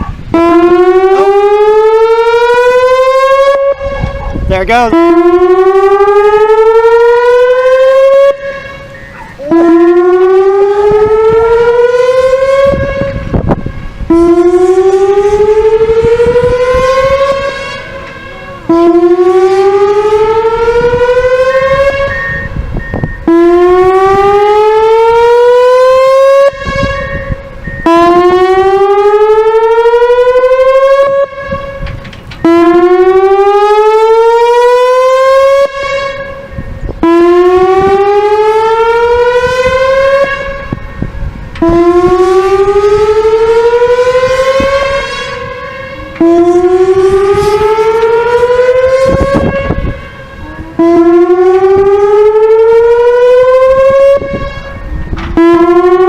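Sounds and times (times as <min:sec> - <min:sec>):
rising siren tone: 0:00.0 - 0:56.0.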